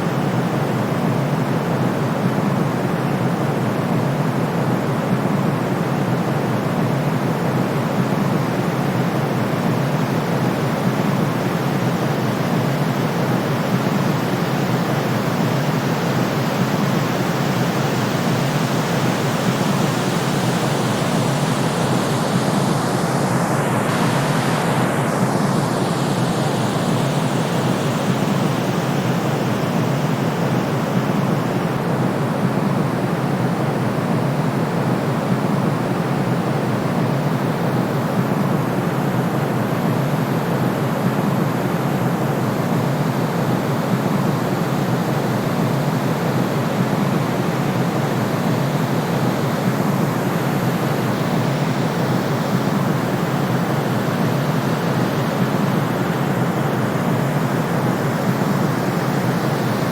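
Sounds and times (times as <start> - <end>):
steady white noise hiss: 0.0 - 59.9.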